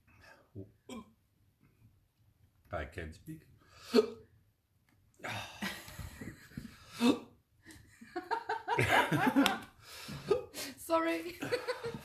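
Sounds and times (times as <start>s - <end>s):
man hiccuping: 0.9s - 1.1s
man breathing hard: 6.6s - 7.3s, 9.8s - 10.7s
man laughing: 8.2s - 9.6s.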